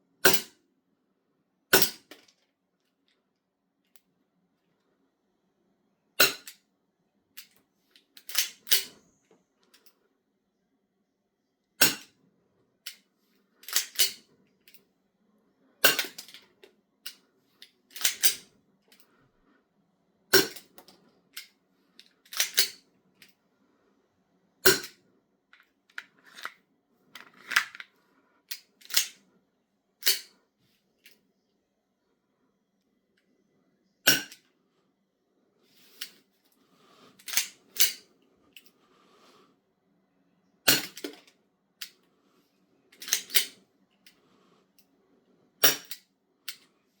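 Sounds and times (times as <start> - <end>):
pistol mechanism clicks and clacks: 1.8 - 2.5, 6.2 - 6.6, 7.4 - 9.0, 11.8 - 12.1, 12.8 - 13.0, 13.6 - 14.9, 15.8 - 17.2, 17.9 - 19.1, 20.3 - 23.4, 28.5 - 29.2, 30.0 - 30.4, 37.2 - 38.7, 40.7 - 42.0, 42.9 - 43.6, 45.6 - 46.7.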